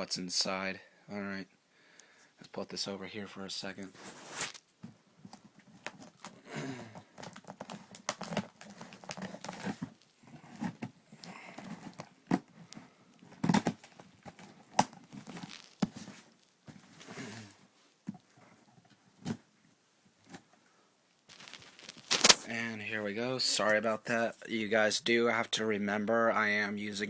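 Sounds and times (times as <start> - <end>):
packaging crinkling and rustling: 5.3 - 6.4, 7.0 - 17.0, 21.3 - 22.5.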